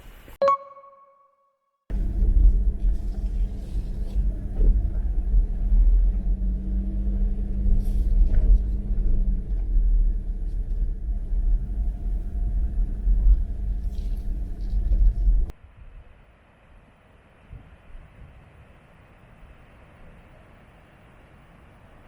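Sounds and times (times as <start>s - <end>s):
vehicle motor rumble: 1.9s - 15.5s.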